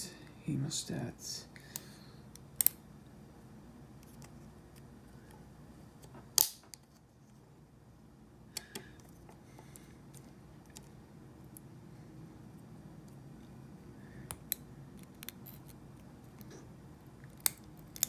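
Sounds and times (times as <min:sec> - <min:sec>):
faint low hum: 0:00.0 - 0:18.0
loud plastic snap: 0:06.4 - 0:06.8.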